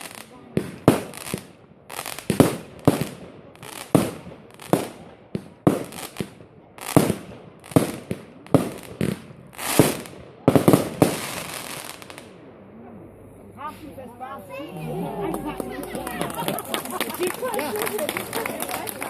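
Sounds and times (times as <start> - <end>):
fireworks bangs and crackle: 0.0 - 12.5.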